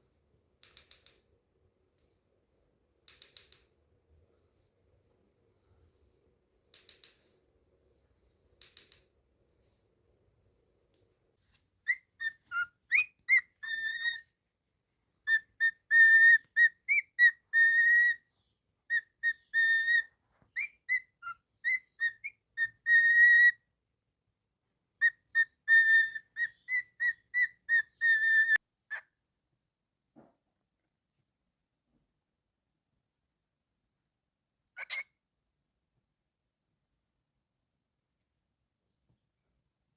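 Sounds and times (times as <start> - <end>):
faint clicks: 0.6 - 1.3, 3.0 - 3.7, 6.7 - 7.3, 8.6 - 9.1
cockatiel whistling a tune: 11.9 - 14.2, 15.2 - 18.2, 18.9 - 23.6, 25.0 - 28.6.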